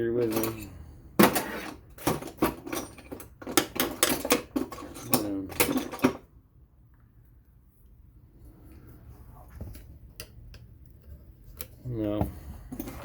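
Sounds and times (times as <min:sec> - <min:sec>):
tool bits clattering: 0:00.1 - 0:06.2.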